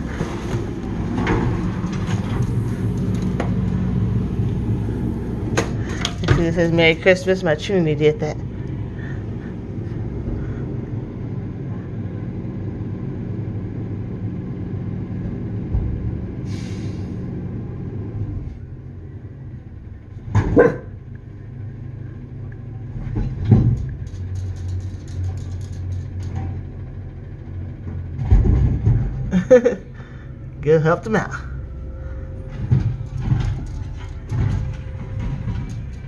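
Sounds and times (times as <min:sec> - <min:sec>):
vehicle engine rumbling: 0:00.0 - 0:36.0
dog barking: 0:20.5 - 0:21.0.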